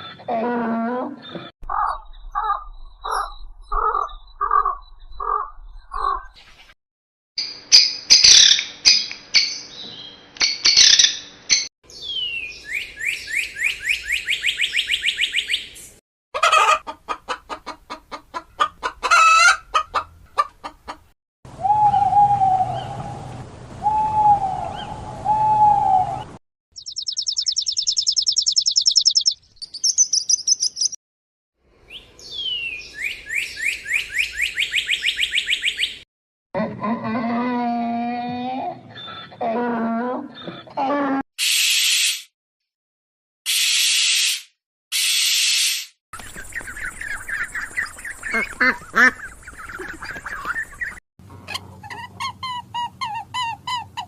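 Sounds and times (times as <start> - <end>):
birds calling: 1.2 - 6.8, 7.4 - 15.8, 26.8 - 31.0, 31.9 - 36.0, 46.2 - 54.0
high rapid bird trill: 26.8 - 31.0, 46.2 - 51.0.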